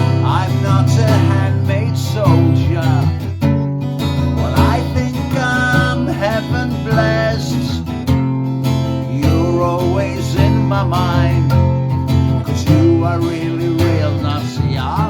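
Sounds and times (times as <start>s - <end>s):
song with strummed acoustic guitar: 0.0s - 15.0s.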